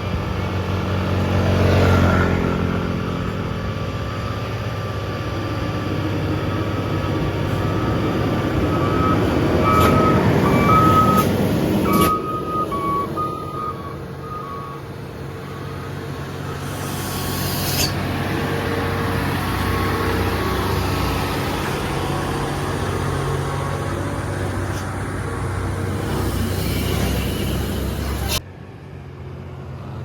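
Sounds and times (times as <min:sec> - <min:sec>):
truck engine pulling under load: 0:00.0 - 0:28.4
brief hiss: 0:16.6 - 0:18.0.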